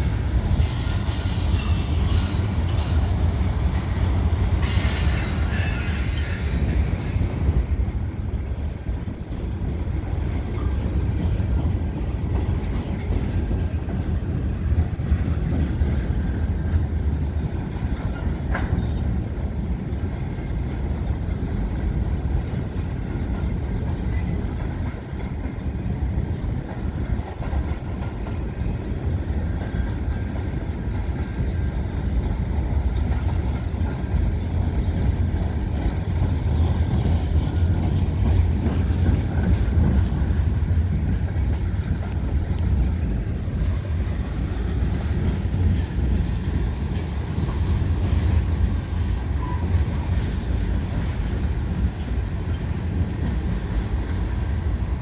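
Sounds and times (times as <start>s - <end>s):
freight train rumbling on rails: 0.0s - 55.0s.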